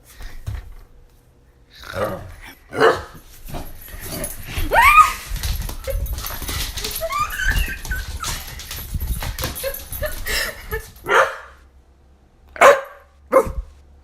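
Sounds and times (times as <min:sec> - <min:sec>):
puppy whining and yipping: 0:06.8 - 0:08.8.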